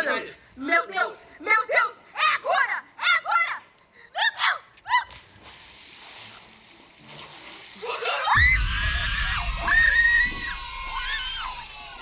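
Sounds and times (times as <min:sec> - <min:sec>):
high-pitched screams: 0:08.0 - 0:12.0.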